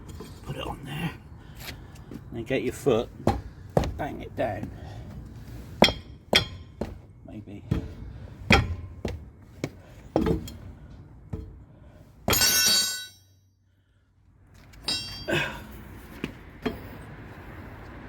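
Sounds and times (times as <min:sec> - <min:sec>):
wheel brace knocking on wheel nuts: 0:03.2 - 0:04.7, 0:05.8 - 0:10.6
ringing metallic clatter: 0:05.8 - 0:07.1, 0:12.3 - 0:13.5, 0:14.7 - 0:15.8.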